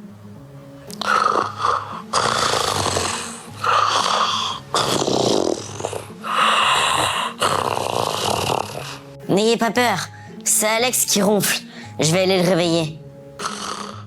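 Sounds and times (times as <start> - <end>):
person snoring loudly: 0.9 - 9.1, 13.4 - 14.0.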